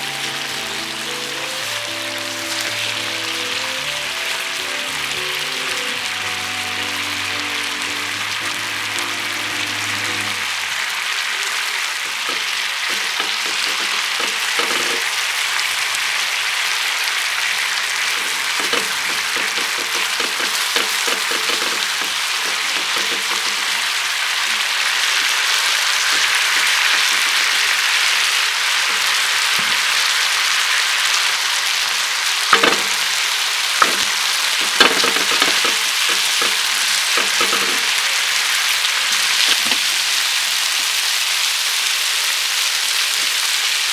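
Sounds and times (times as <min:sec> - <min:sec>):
food sizzling in a frying pan: 0:00.0 - 0:43.9
utensil clicking against pan: 0:12.0 - 0:15.2, 0:18.1 - 0:24.0, 0:25.2 - 0:28.1, 0:32.6 - 0:38.4, 0:39.3 - 0:40.0.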